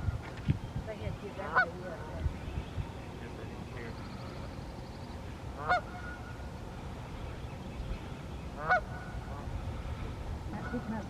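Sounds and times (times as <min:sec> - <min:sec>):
goose honking: 0:01.3 - 0:02.2, 0:05.6 - 0:06.4, 0:08.6 - 0:09.6, 0:10.5 - 0:11.0.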